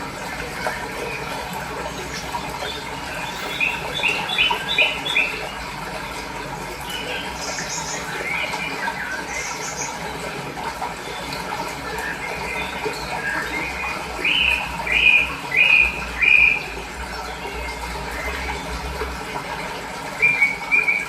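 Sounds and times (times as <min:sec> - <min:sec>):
birds chirping: 0:00.0 - 0:21.0
running water: 0:00.0 - 0:21.0.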